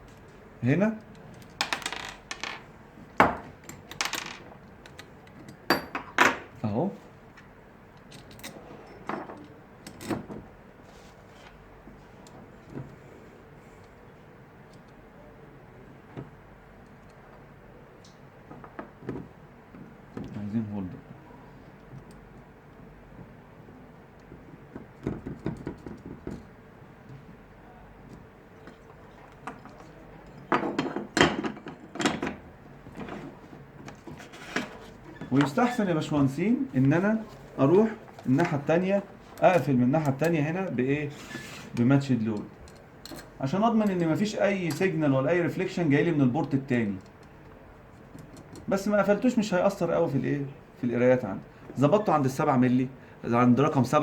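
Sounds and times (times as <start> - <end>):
parts knocking and clattering: 1.4 - 6.5, 24.3 - 26.6, 28.1 - 35.7.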